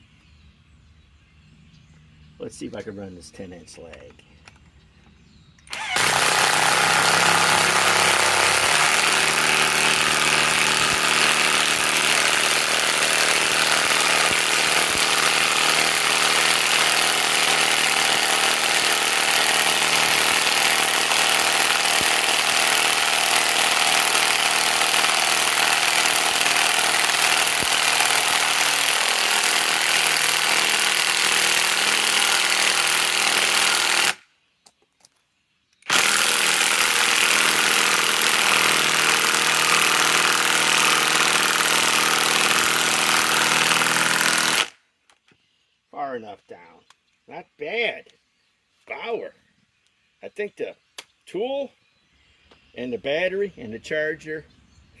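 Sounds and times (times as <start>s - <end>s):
cordless impact wrench running: 5.7s - 34.2s, 35.8s - 44.8s.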